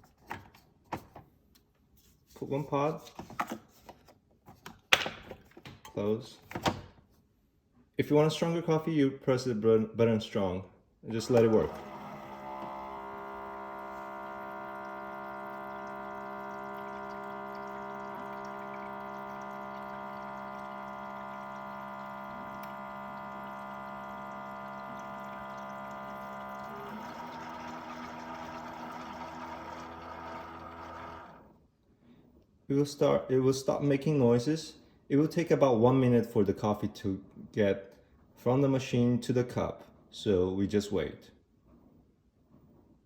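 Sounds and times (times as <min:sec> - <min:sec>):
coffee maker pump hum: 0:11.1 - 0:31.6.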